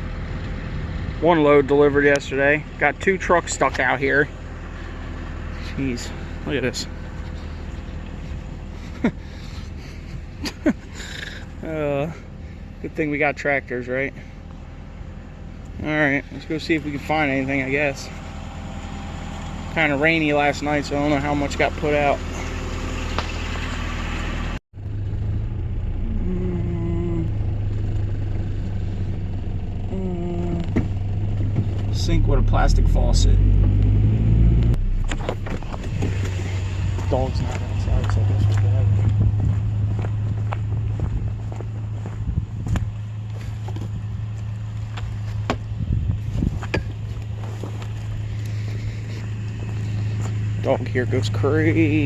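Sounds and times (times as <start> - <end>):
vehicle engine rumble: 0.0 - 52.0
short hum-like tone: 25.3 - 28.3, 29.8 - 30.8.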